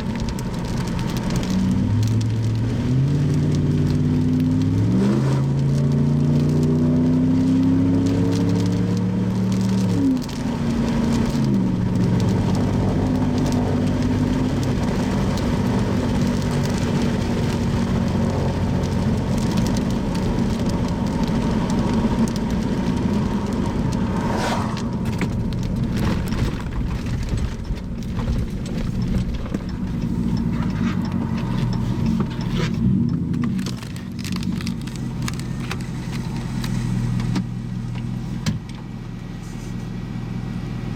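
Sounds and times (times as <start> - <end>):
car engine shifting gears: 0.0 - 40.9.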